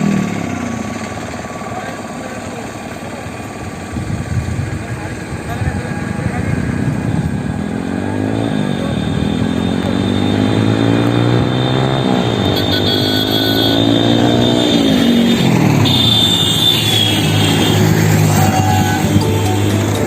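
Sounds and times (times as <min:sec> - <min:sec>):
motorcycle engine revving and idling: 0:00.0 - 0:20.0.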